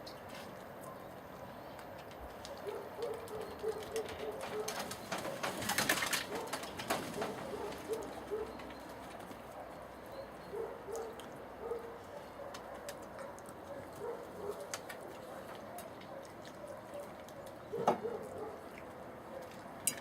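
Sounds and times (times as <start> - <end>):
rapid clicking and rustling: 1.7 - 9.6.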